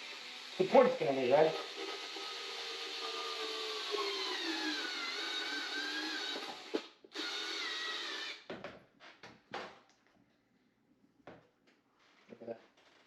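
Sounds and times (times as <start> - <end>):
cordless drill driving a screw: 0.0 - 8.5.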